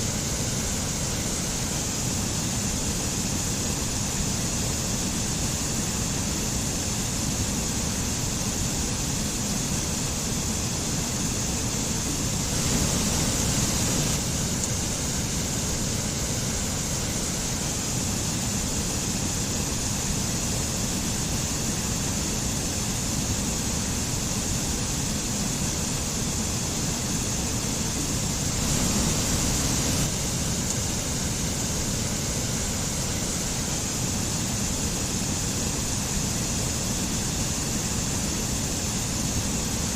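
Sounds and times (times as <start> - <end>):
mountain stream and waterfall rushing: 12.0 - 20.2, 27.5 - 39.0.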